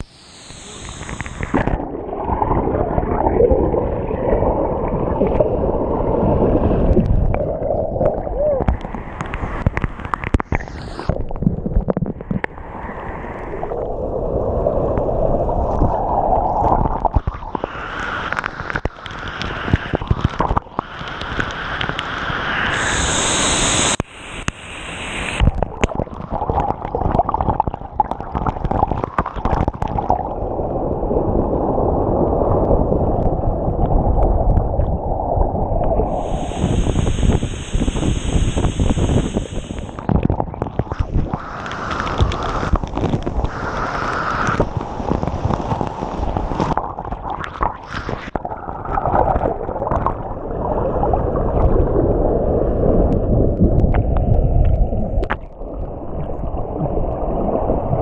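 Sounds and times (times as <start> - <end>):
waterfall rushing: 17.6 - 25.5, 41.3 - 44.7.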